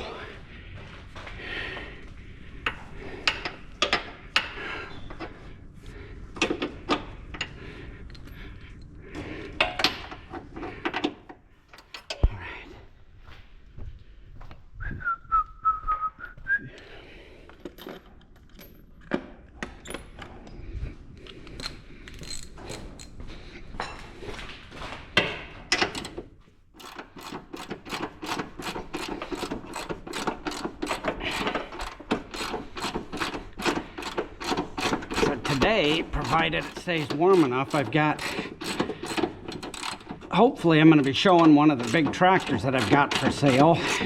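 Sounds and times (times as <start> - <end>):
scattered knocks and clicks: 25.2 - 44.0
sharp mechanical clicks: 26.8 - 40.4.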